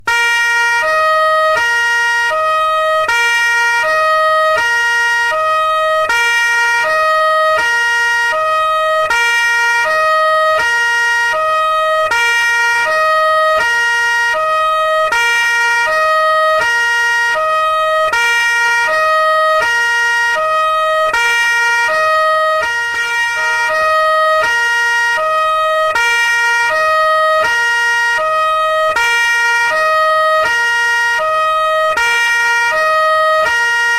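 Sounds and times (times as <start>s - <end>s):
police siren two-tone hi-lo: 0.0s - 33.9s.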